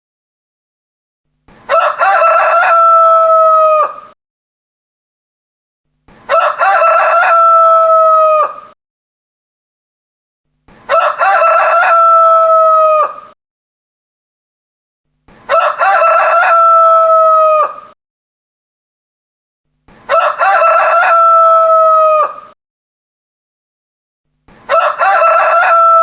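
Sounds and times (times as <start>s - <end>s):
rooster crowing: 1.7s - 4.2s, 6.3s - 8.8s, 10.9s - 13.4s, 15.5s - 18.0s, 20.1s - 22.6s, 24.7s - 26.0s.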